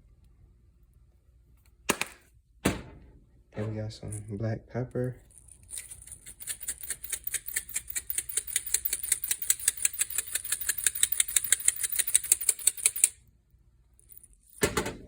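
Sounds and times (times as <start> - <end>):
pepper grinder clicking: 5.8 - 13.2.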